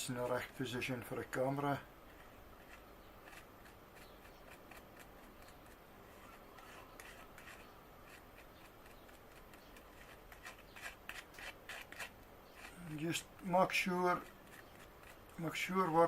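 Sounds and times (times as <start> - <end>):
tool scraping filler on cardboard: 2.1 - 16.0.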